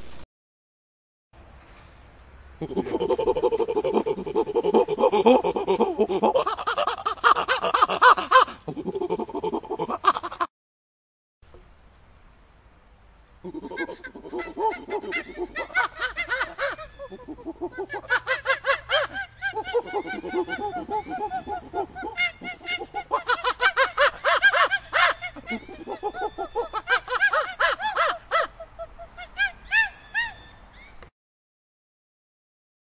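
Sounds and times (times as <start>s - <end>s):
monkey chatter: 2.6s - 10.4s, 13.4s - 30.3s.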